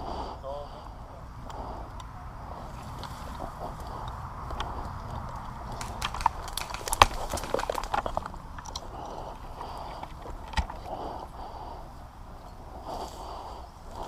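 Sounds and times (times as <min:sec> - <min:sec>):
footsteps with sharp clicks: 0:02.7 - 0:11.4.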